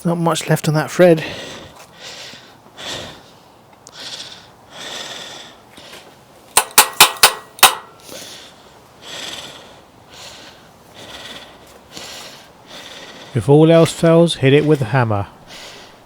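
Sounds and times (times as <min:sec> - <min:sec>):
heavy breathing: 0:01.2 - 0:06.3, 0:07.9 - 0:16.0
hammer striking metal: 0:06.6 - 0:08.0.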